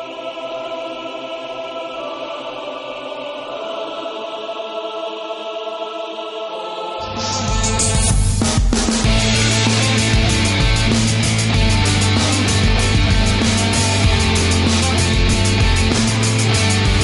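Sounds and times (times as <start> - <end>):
full-band music: 7.0 - 17.0.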